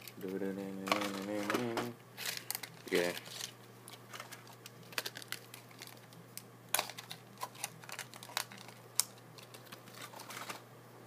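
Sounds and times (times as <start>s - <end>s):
packaging crinkling: 2.2s - 10.6s.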